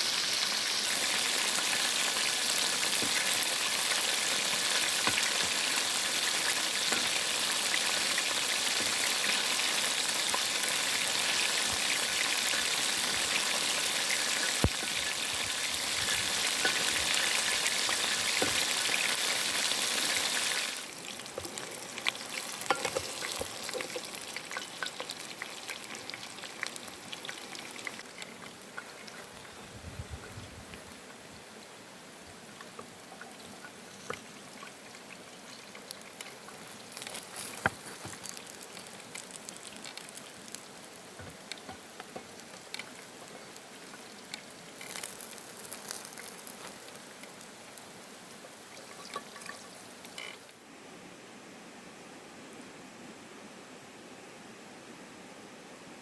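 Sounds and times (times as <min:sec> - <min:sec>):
wings sizzling in hot oil: 0:00.0 - 0:29.7, 0:32.5 - 0:50.6
soft crackles and clicks: 0:32.6 - 0:50.6.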